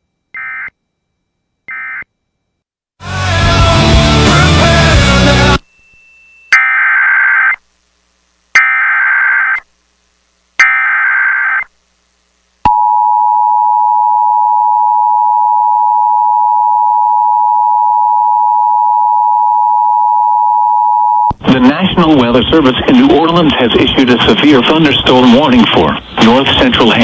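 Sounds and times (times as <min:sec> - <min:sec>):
screechy digital data tone: 0:05.8 - 0:07.6, 0:08.6 - 0:09.6, 0:10.6 - 0:11.7.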